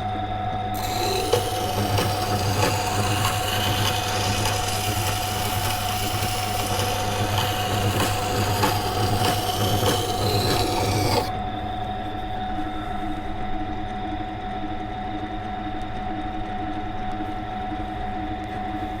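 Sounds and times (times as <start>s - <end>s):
blade scraping on grinding wheel: 0.8s - 11.4s
grinder motor hum: 0.8s - 11.4s.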